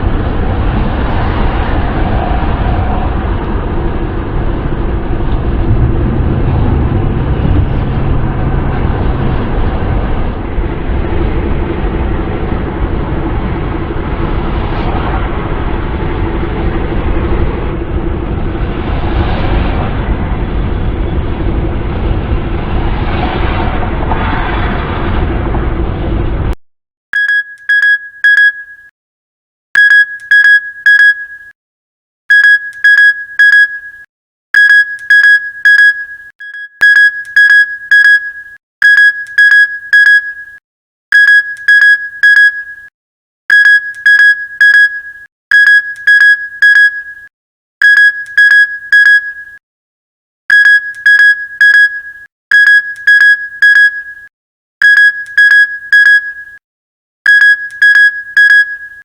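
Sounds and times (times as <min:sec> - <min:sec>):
alarm clock beeping: 0:27.2 - 0:28.9, 0:29.8 - 0:31.5, 0:32.3 - 0:34.0, 0:34.6 - 0:40.6, 0:41.2 - 0:42.9, 0:43.5 - 0:49.6, 0:50.5 - 0:56.6, 0:57.3 - 0:59.0.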